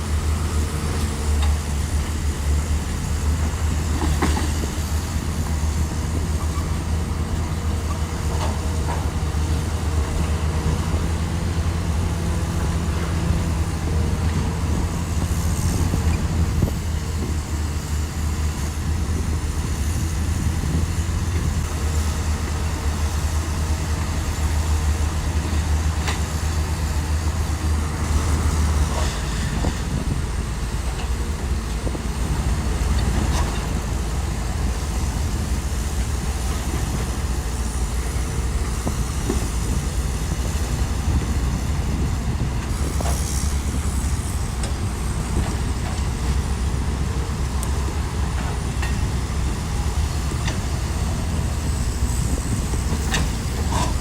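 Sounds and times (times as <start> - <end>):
bulldozer diesel engine: 0.0 - 54.0.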